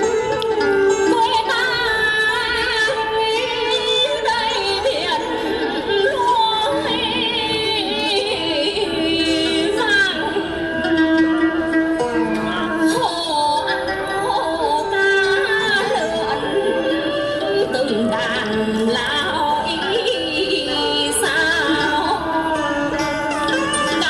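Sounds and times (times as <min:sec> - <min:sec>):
sustained traditional instruments: 0:00.0 - 0:24.0
woman singing with vibrato: 0:01.0 - 0:24.0.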